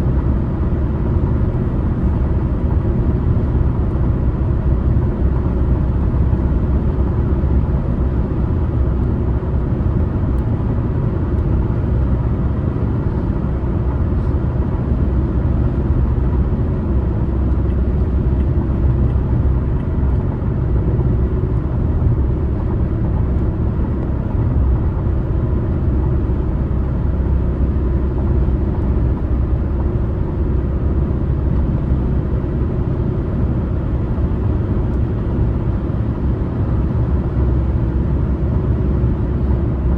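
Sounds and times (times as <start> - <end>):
car driving on highway: 0.0 - 39.9.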